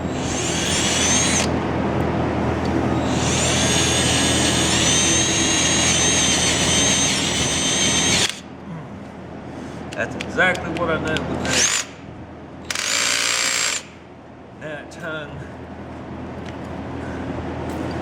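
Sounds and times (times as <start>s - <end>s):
electric drill whining: 0.0s - 1.5s, 3.0s - 8.4s, 12.7s - 13.9s.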